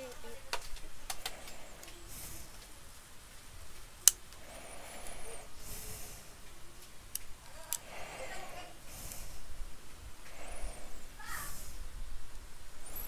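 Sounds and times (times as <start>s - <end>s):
short hisses: 1.2s - 2.8s, 4.4s - 6.4s, 7.6s - 9.6s, 10.2s - 12.0s.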